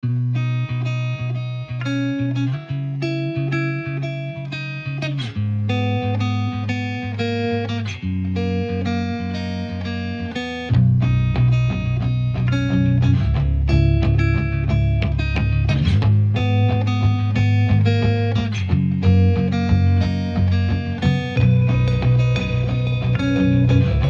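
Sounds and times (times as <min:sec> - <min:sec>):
plucked guitar notes: 0:00.0 - 0:24.0
sustained bass chords: 0:10.7 - 0:24.0.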